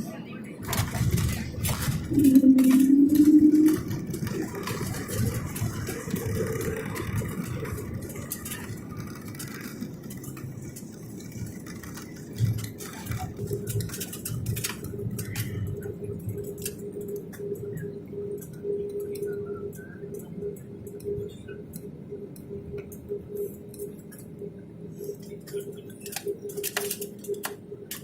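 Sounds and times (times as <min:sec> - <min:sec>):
airliner cabin rumble: 0:00.0 - 0:28.0
steady hum: 0:00.1 - 0:09.0.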